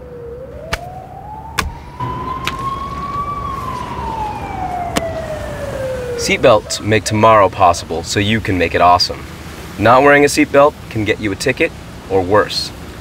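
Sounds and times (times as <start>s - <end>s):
police siren wailing: 0.0s - 8.0s.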